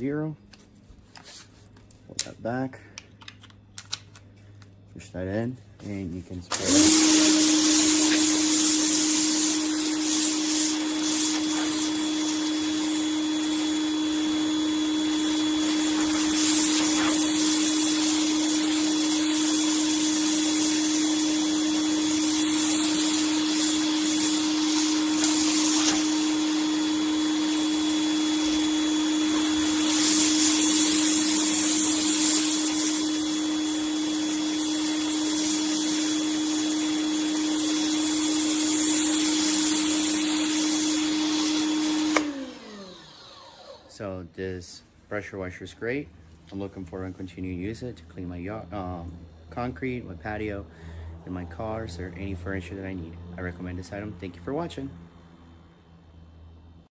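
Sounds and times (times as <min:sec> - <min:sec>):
pressure washer motor humming: 0:06.5 - 0:44.0
water jet hissing on concrete: 0:06.6 - 0:13.0, 0:15.3 - 0:21.1, 0:22.0 - 0:33.3.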